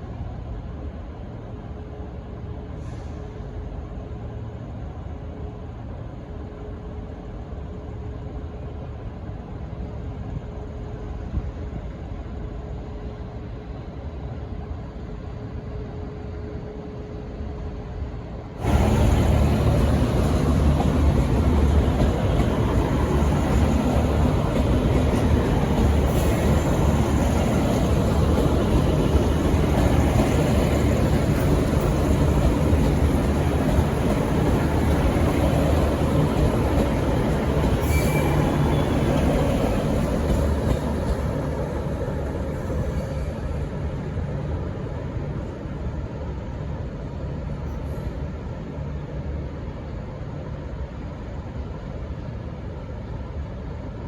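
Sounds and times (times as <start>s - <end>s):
diesel locomotive engine rumble: 0.0s - 54.0s
wheel and rail noise: 16.6s - 54.0s.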